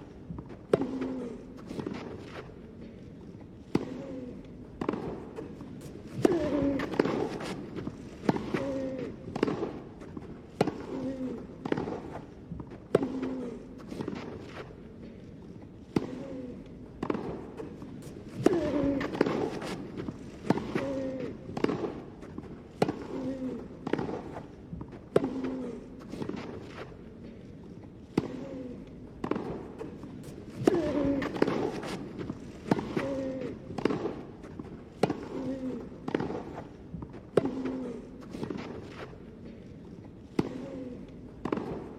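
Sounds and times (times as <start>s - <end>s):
tennis ball struck by racquets: 4.8s - 14.8s, 17.0s - 27.0s, 29.2s - 39.2s, 41.4s - 41.9s
player grunting: 30.6s - 31.4s.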